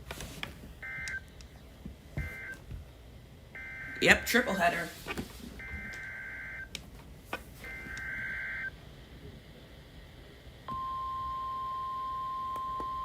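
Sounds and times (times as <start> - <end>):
steady warning alarm tone: 0.8 - 1.4, 2.2 - 2.6, 3.6 - 4.5, 5.6 - 6.7, 7.6 - 8.7, 10.7 - 13.0.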